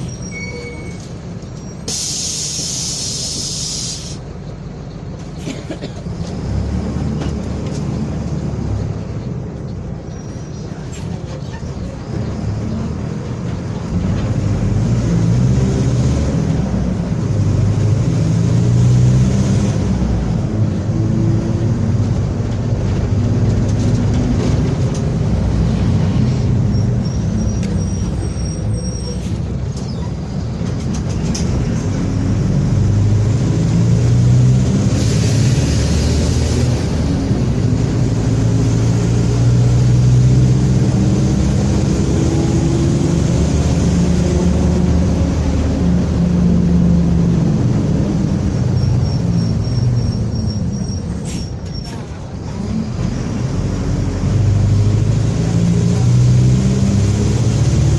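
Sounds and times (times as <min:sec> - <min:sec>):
bus diesel engine running: 0:00.0 - 0:57.9
short air hiss: 0:01.9 - 0:04.2.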